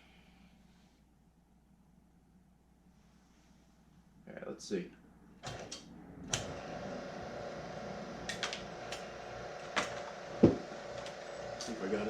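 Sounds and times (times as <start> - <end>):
wire-stripping machine humming: 5.4 - 12.0
loud knock: 9.8 - 10.7.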